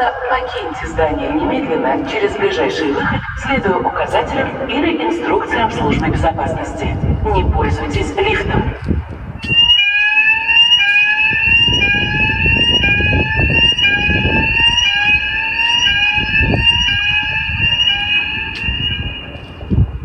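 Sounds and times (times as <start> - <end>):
spoken evacuation messages: 0.0 - 8.8
fire alarm rising sweep tone: 0.0 - 20.0.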